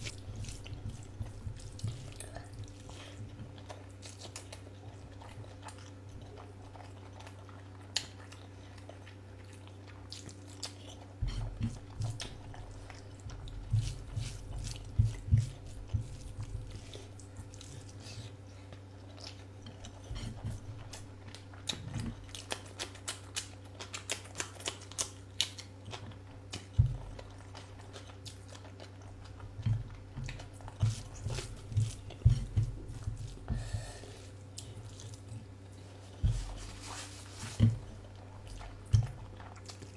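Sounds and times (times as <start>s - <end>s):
steady low hum: 0.0s - 7.6s, 25.6s - 39.9s
person chewing food: 0.0s - 39.9s.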